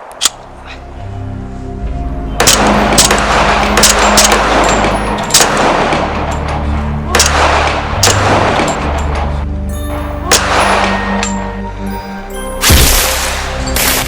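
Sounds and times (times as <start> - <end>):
echoing gunshots: 2.4 - 9.3.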